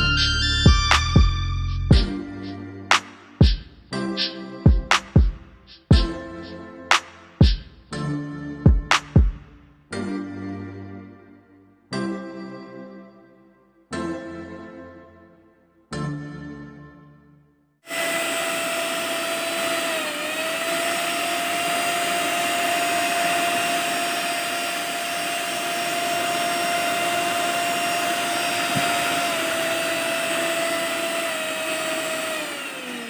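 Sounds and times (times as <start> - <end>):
mixer grinder motor whining: 17.9 - 33.0.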